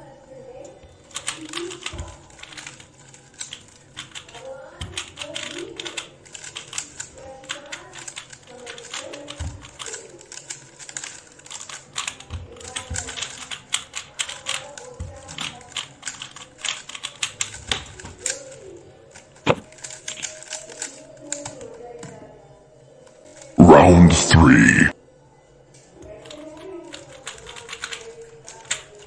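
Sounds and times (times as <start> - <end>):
faint background music: 0.0 - 29.0
plastic puzzle cube clicking: 1.1 - 21.7, 26.2 - 29.0.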